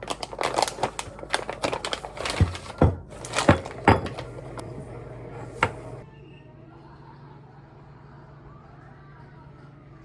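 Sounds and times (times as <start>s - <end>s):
hard objects knocking and clinking: 0.0s - 4.8s.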